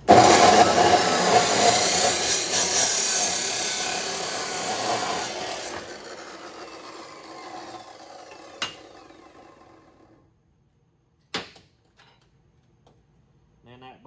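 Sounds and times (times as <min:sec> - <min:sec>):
metal-cutting saw winding down: 0:00.0 - 0:10.2.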